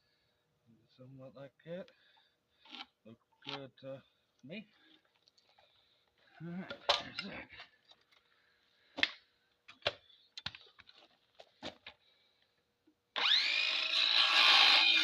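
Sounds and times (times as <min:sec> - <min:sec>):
electric saw motor whine: 0:13.2 - 0:15.0.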